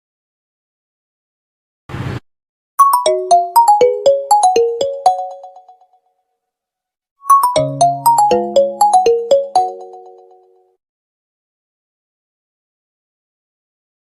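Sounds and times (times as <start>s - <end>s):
mobile phone ringtone melody: 2.8s - 5.8s, 7.2s - 10.7s.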